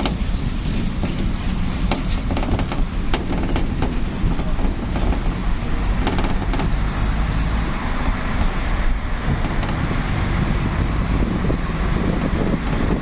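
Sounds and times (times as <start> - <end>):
sharp clicks and knocks: 0.0 - 7.2, 9.2 - 10.4
highway traffic rumble: 0.0 - 13.0.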